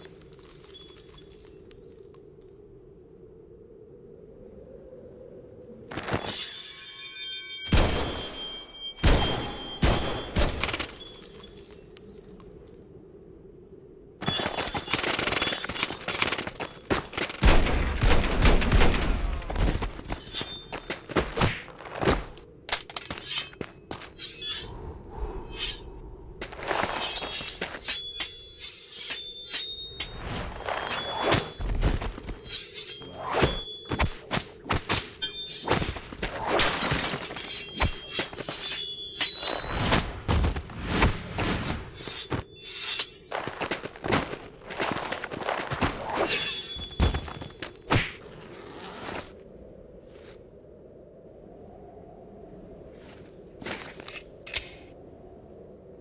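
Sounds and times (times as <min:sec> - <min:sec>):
fight hits and clashes: 0:26.4 - 0:48.3
glass shattering: 0:46.2 - 0:47.8.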